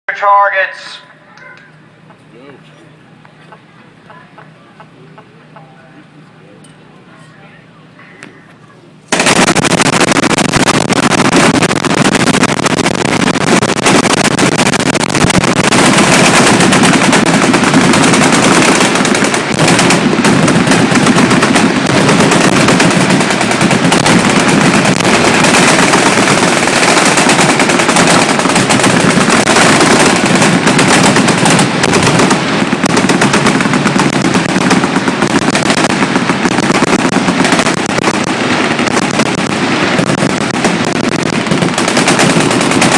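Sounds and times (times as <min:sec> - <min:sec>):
machine guns automatic fire: 0:09.1 - 0:42.9.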